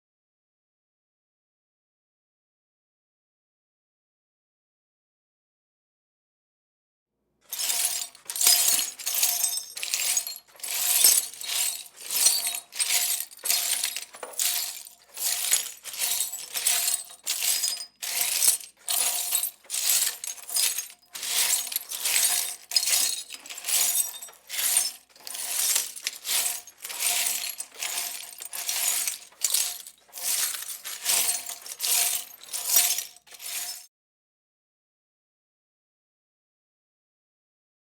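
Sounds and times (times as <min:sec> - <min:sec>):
broom sweeping broken glass: 0:07.5 - 0:33.9.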